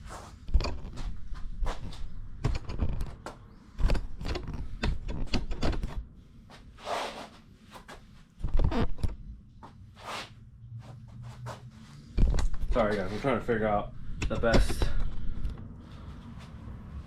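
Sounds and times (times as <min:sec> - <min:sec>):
gym equipment knocking and thudding: 0:01.7 - 0:06.0.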